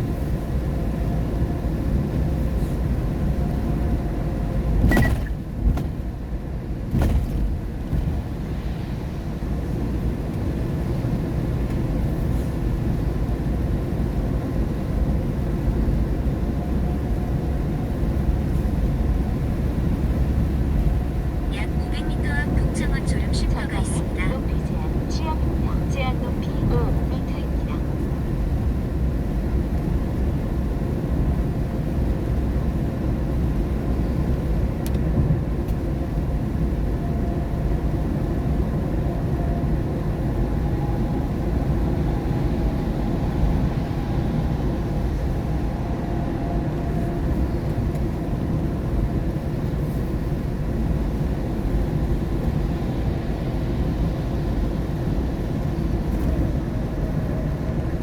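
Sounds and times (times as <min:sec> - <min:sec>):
road and tyre rumble in car: 0:00.0 - 0:58.0
faint whine: 0:21.4 - 0:28.2.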